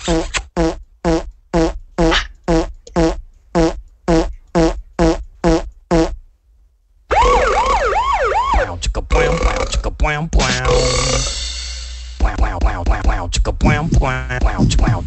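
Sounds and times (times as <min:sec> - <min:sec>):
warbling siren-like tone: 0:07.1 - 0:08.7.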